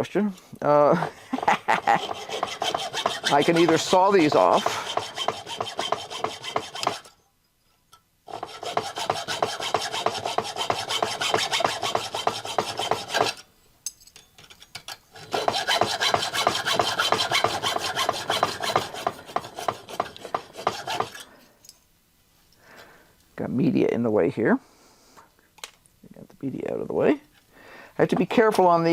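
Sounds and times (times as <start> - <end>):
hand saw rasping on metal: 1.4 - 7.1, 8.3 - 13.4, 15.1 - 21.3.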